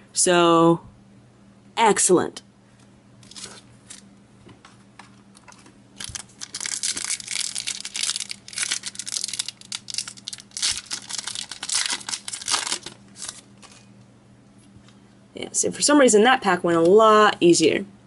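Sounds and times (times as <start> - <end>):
foil wrapper tearing and crinkling: 3.2 - 4.0, 5.4 - 13.9.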